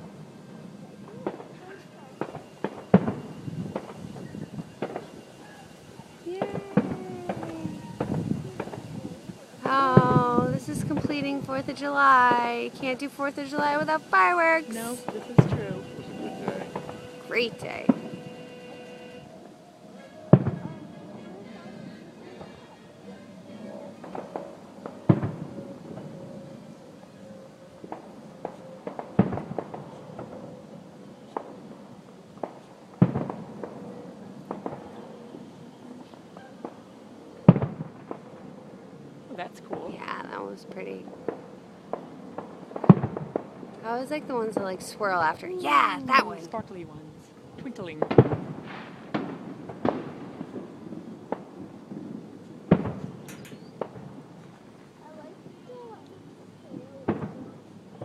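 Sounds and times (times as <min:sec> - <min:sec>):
firework pops: 0:01.1 - 0:05.2, 0:06.3 - 0:17.0, 0:24.0 - 0:26.1, 0:27.8 - 0:30.5, 0:32.4 - 0:33.8, 0:34.4 - 0:35.0, 0:37.4 - 0:38.3, 0:41.2 - 0:44.8, 0:47.6 - 0:54.8, 0:55.5 - 0:58.0
distant firework booms: 0:01.1 - 0:18.3, 0:20.2 - 0:21.0, 0:23.9 - 0:26.3, 0:27.8 - 0:30.6, 0:31.3 - 0:36.8, 0:37.4 - 0:38.8, 0:41.1 - 0:45.0, 0:47.6 - 0:54.5, 0:56.7 - 0:58.0.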